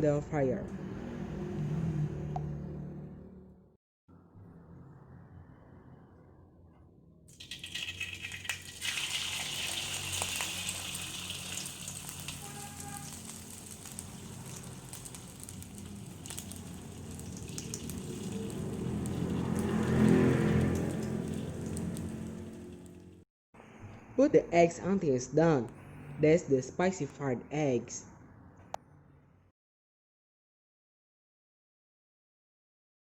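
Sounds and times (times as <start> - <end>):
eggs sizzling in hot oil: 7.3 - 23.1.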